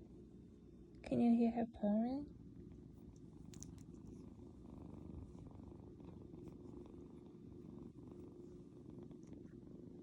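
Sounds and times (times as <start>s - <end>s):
kitten purring: 2.2s - 10.0s.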